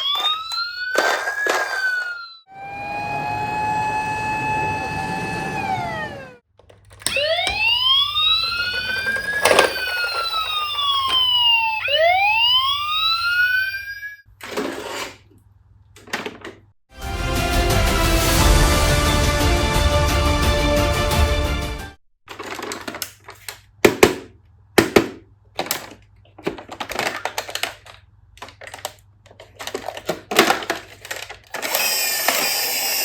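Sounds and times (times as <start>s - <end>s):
fire engine siren wailing: 0.0s - 6.4s, 7.1s - 14.2s.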